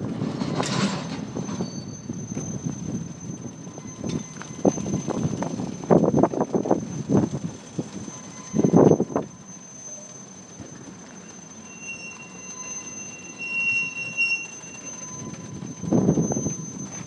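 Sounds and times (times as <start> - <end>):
wind on microphone: 0.0 - 9.4, 15.0 - 17.0
moving train rumble: 0.0 - 17.0
train wheels squealing on rails: 0.0 - 17.0.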